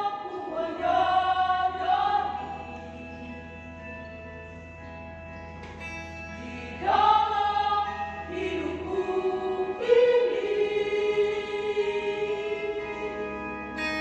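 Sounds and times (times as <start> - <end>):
choir singing held chords: 0.0 - 4.2, 6.3 - 14.0.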